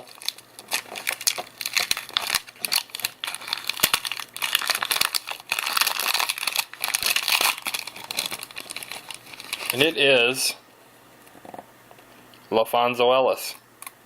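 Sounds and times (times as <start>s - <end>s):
trading card wrapper crinkling: 0.0s - 10.0s.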